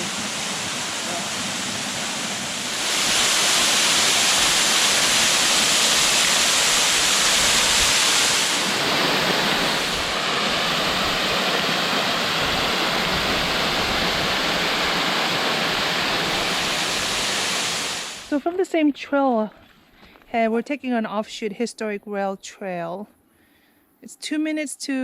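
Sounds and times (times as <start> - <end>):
waterfall rushing: 0.0 - 18.3.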